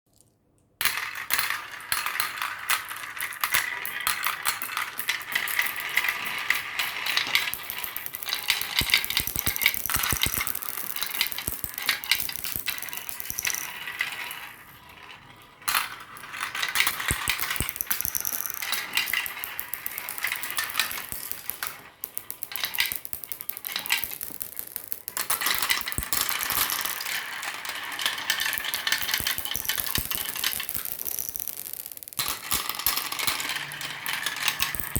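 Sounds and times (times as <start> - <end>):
marbles clattering down a run: 0.8 - 34.9.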